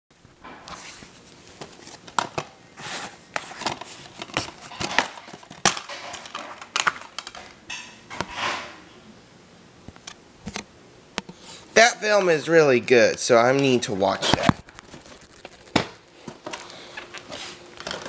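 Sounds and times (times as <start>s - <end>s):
crinkling plastic rustles: 14.1s - 18.0s.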